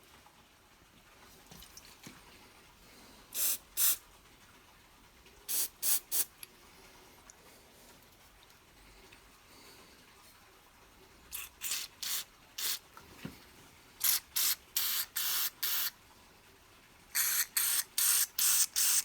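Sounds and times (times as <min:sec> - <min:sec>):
aerosol can spraying: 0:03.4 - 0:04.0, 0:05.5 - 0:06.3, 0:11.3 - 0:12.8, 0:14.0 - 0:15.9, 0:17.2 - 0:19.0.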